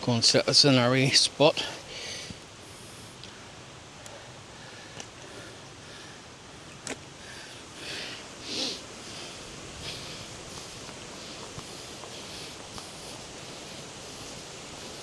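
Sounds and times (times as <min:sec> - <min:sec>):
background hiss: 0:00.0 - 0:15.0
footsteps on rough ground: 0:09.1 - 0:15.0.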